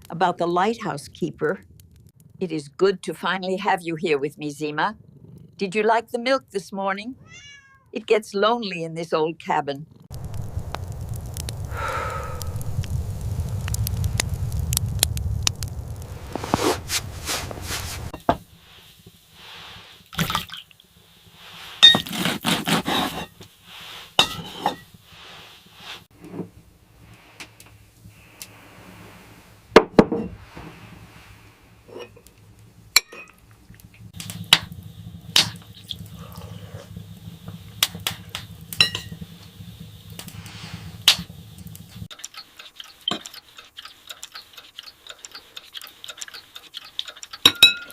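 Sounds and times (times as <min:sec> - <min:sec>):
low hum: 0:10.0 - 0:19.3, 0:26.2 - 0:42.1.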